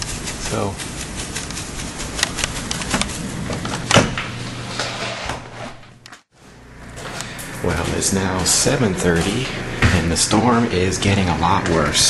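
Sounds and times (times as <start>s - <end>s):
sharp ticks and crackles: 0.0s - 3.0s.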